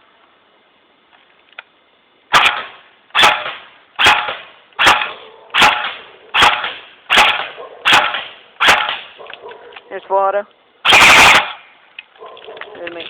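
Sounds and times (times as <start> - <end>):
airsoft rifle shots: 2.3 - 9.3, 10.8 - 11.8.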